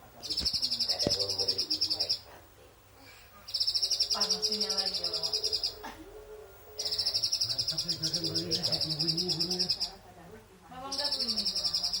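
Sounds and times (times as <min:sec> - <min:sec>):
bird singing a high trill: 0:03.5 - 0:05.8, 0:06.8 - 0:10.0, 0:10.9 - 0:12.0.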